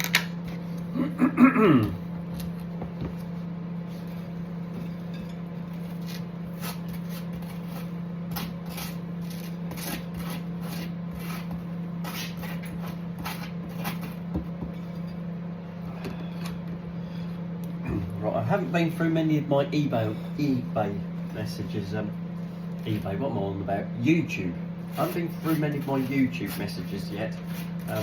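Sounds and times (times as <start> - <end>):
steady low hum: 0.0 - 28.0
knife scraping toast: 5.8 - 14.3.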